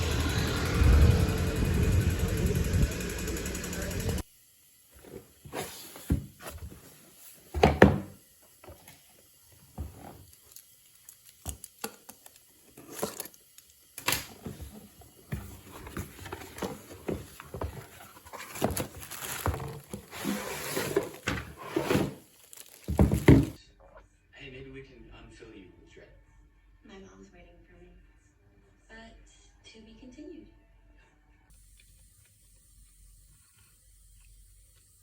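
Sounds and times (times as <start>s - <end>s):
objects knocking and clattering: 14.4s - 23.6s
rustling: 15.4s - 23.6s.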